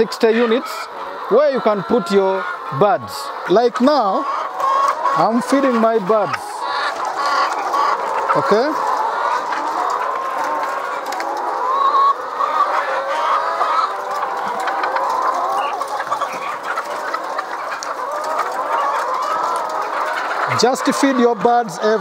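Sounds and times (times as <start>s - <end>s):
hens clucking: 0.0s - 22.0s.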